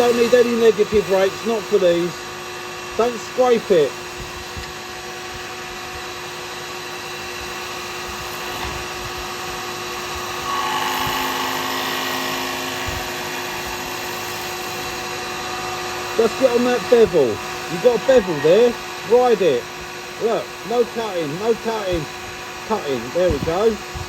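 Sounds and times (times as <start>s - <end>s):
chisel cutting spinning resin: 0.0s - 2.2s, 7.0s - 24.0s
lathe motor hum: 0.0s - 24.0s.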